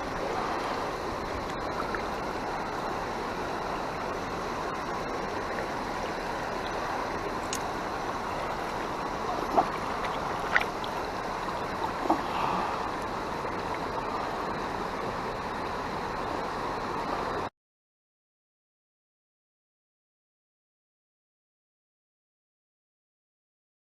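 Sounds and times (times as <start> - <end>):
river water over rapids: 0.0 - 17.5
sharp clicks or splashes: 7.4 - 7.8, 9.4 - 11.0.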